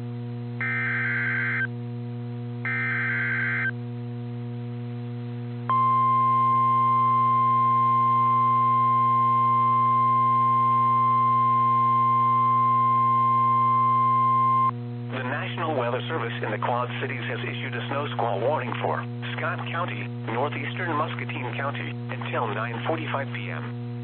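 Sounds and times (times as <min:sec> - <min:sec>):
low hum: 0:00.0 - 0:24.0
steady alarm tone: 0:00.6 - 0:01.7, 0:02.7 - 0:03.7
buzzy digital data bursts: 0:02.7 - 0:03.7.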